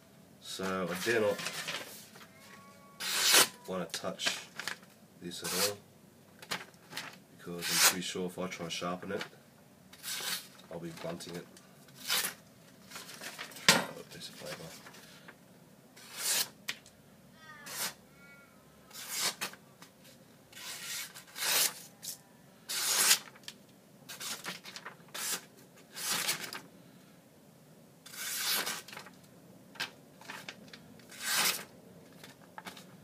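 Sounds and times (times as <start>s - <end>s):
knife slicing paper: 3.0s - 3.6s, 5.4s - 5.8s, 7.6s - 8.0s, 10.0s - 10.5s, 12.0s - 12.4s, 16.0s - 16.6s, 17.7s - 18.0s, 18.9s - 19.6s, 20.6s - 21.9s, 22.7s - 23.4s, 24.1s - 26.6s, 28.1s - 29.0s, 31.1s - 31.7s.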